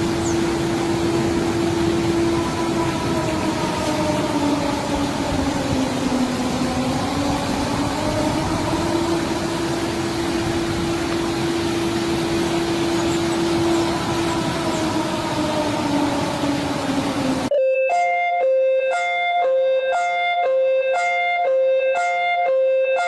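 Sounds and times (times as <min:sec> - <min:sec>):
street noise hiss: 0:00.0 - 0:17.5
warning siren held tone: 0:00.0 - 0:23.0.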